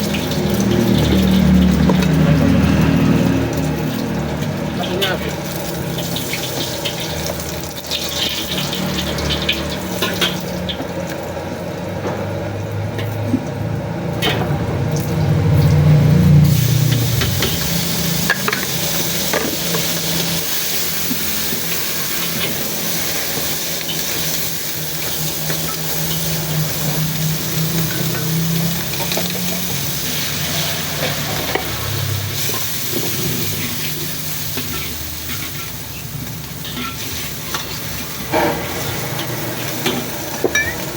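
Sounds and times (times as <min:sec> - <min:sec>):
food sizzling in a wok: 0:00.0 - 0:11.4, 0:15.0 - 0:40.9
metal spatula clinking on pan: 0:40.4 - 0:40.9.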